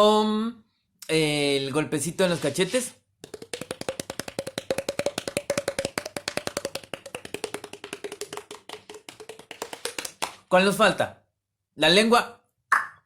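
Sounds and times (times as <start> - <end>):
fingers tapping on puffed cheeks: 3.2 - 10.5.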